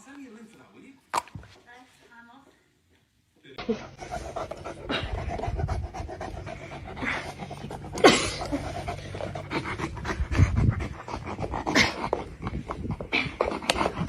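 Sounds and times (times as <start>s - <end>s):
dog panting: 3.6s - 14.0s.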